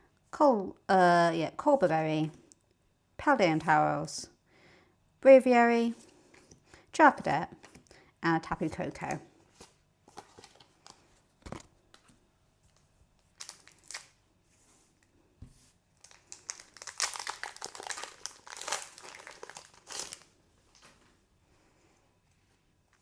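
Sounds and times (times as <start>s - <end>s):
foil wrapper crinkling: 13.2s - 14.2s, 16.0s - 21.0s.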